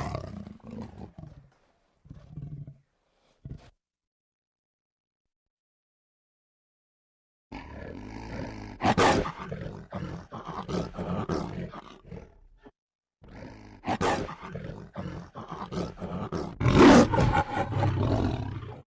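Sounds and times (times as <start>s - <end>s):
lion roaring and snarling: 0.0s - 3.7s, 7.5s - 18.8s.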